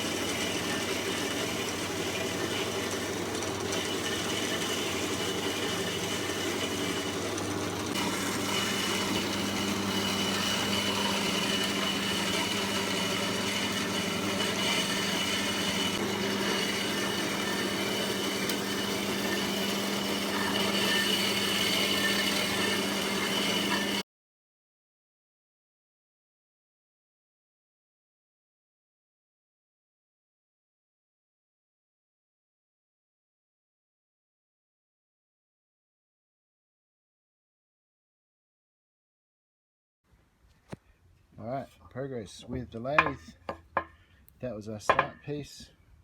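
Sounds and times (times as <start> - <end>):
machine motor hum: 0.1 - 24.0.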